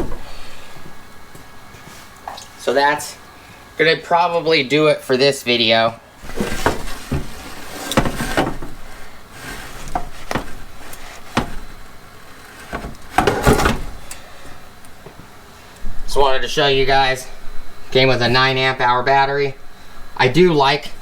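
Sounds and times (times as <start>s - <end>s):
hard objects knocking and rubbing: 6.2s - 14.2s.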